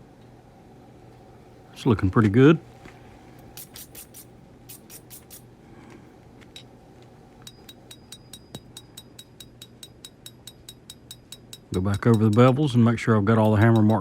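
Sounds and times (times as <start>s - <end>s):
hammer tapping blade on anvil: 7.5s - 14.0s.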